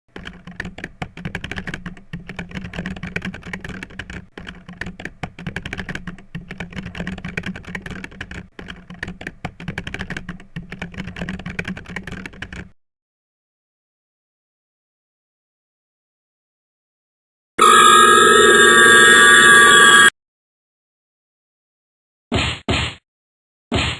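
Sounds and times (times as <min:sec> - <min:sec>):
rapid dense clicking: 0:00.1 - 0:12.7.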